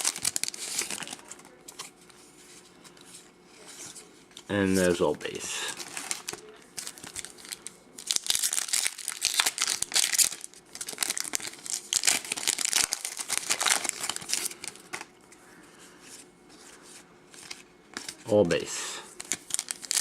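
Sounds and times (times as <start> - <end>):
foil wrapper crinkling: 0.0 - 1.9, 5.6 - 15.1, 19.2 - 20.0.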